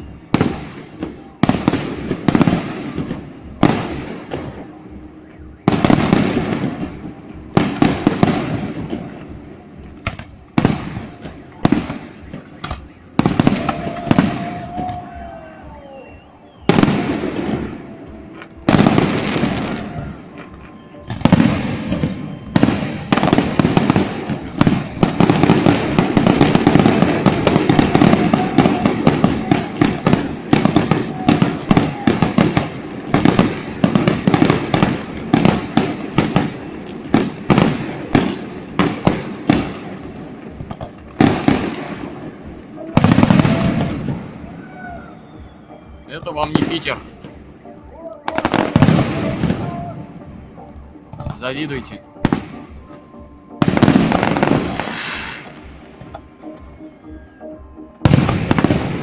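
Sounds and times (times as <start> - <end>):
fireworks crackling barrage: 0.0 - 59.0
fireworks shell bursts: 54.0 - 55.7.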